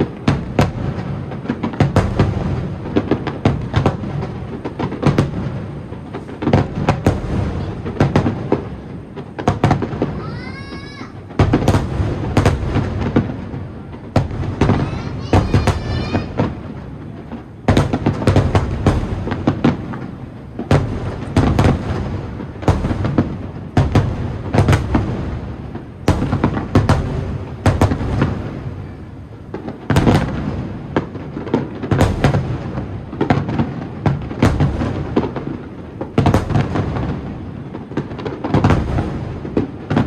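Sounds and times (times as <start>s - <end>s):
firework booms and crackles: 0.0s - 40.0s
pitched cries or whistles: 14.8s - 16.3s.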